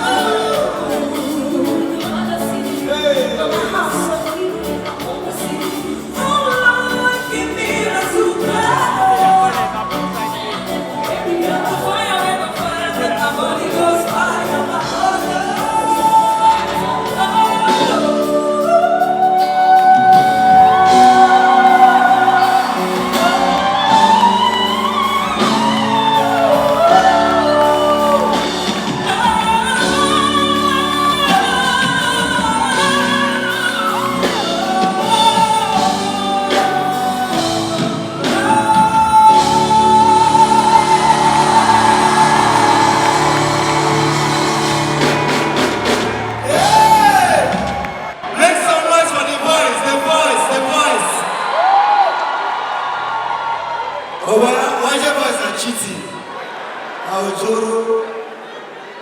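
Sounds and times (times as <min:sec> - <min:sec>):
person singing long notes: 0:00.0 - 0:47.8
band accompaniment: 0:00.0 - 0:57.8.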